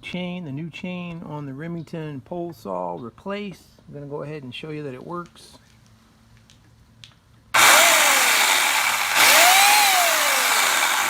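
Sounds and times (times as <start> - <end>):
electric pole saw running: 7.6 - 11.0.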